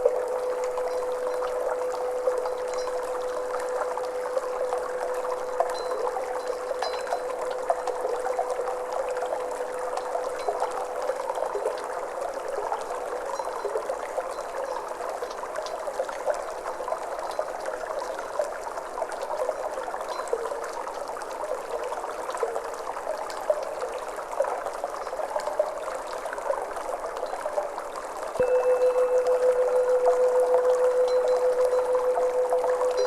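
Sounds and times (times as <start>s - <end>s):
singing bowl ringing: 0.0s - 12.2s, 28.4s - 33.0s
trickling water: 0.0s - 33.0s.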